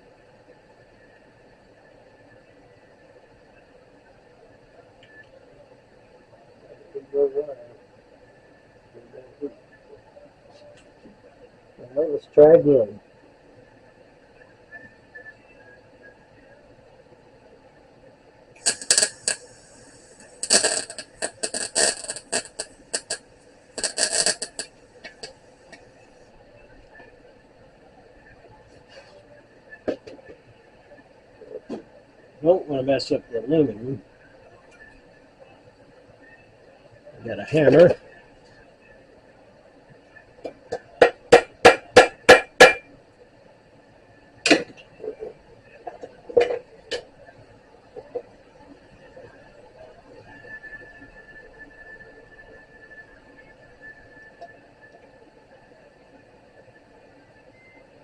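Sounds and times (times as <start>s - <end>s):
welder arc crackling: 18.5s - 26.2s, 40.5s - 42.9s.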